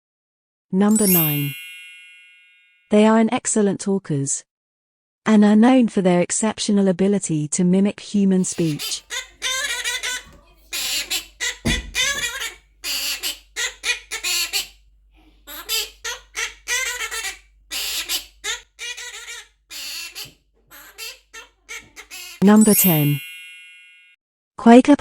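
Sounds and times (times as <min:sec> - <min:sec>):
parrot talking: 0:00.9 - 0:01.6, 0:08.4 - 0:23.2.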